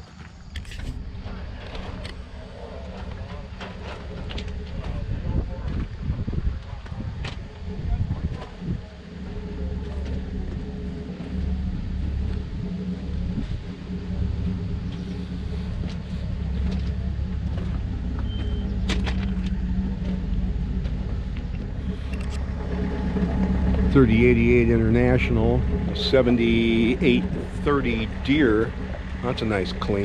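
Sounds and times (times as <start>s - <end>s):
engine running with low rumble: 0.0s - 30.0s.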